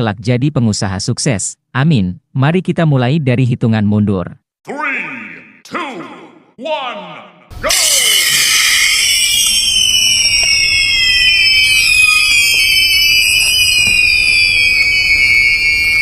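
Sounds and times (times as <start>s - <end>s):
high-pitched whistling squeals: 7.7s - 16.0s.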